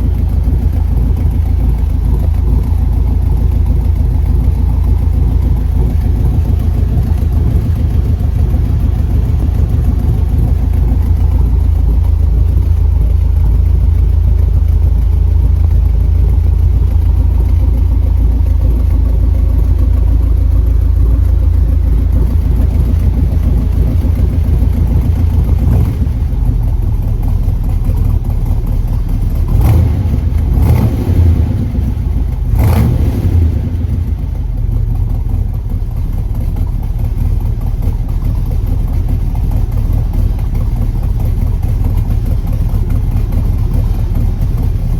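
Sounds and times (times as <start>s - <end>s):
car engine running: 0.0s - 44.9s
engine revving: 25.6s - 26.2s, 29.4s - 34.1s.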